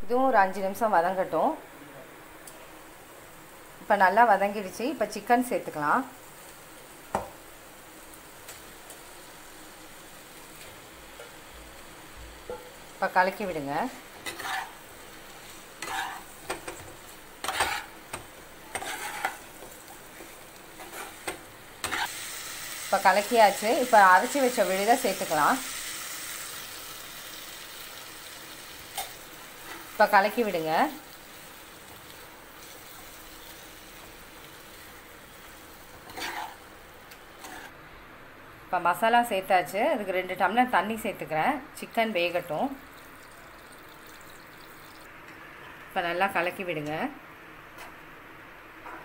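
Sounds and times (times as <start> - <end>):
frying sizzle: 2.4 - 37.8, 41.9 - 45.1
spoon scraping while stirring: 14.2 - 14.8, 15.8 - 16.8, 17.4 - 22.1, 36.0 - 36.6, 37.4 - 37.7.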